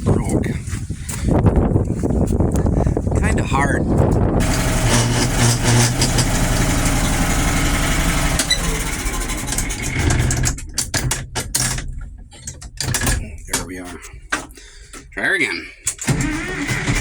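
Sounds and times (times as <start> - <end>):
tractor diesel engine running: 4.0 - 11.0, 16.0 - 17.0.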